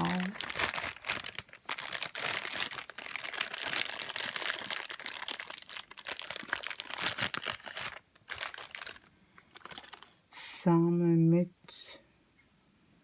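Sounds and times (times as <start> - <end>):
plastic crinkling: 0.0 - 10.2.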